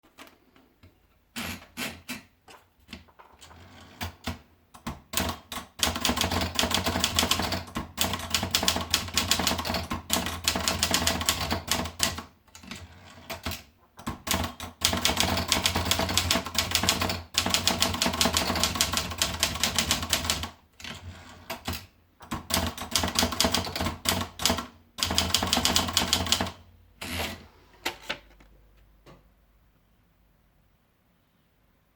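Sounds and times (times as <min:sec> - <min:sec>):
manual typewriter typing: 0:03.0 - 0:27.4.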